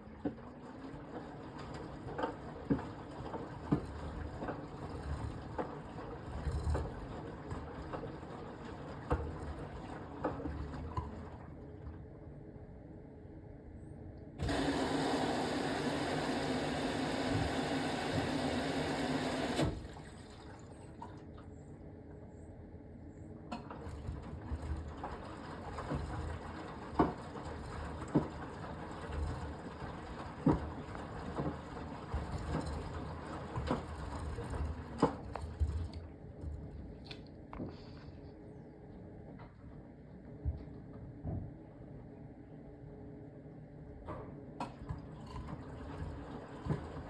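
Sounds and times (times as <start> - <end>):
washing machine drum churning: 0.0 - 12.1, 14.4 - 21.5, 23.5 - 37.0, 44.6 - 47.0
water inlet rushing: 14.4 - 21.4, 23.5 - 37.0, 44.6 - 47.0.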